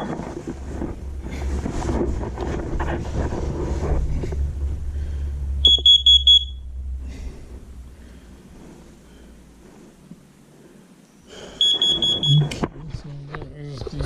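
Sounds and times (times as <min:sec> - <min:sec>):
rubbing and handling noise: 0:00.0 - 0:06.4, 0:07.2 - 0:14.0
alarm high-pitched beeps: 0:05.6 - 0:06.6, 0:11.6 - 0:12.6.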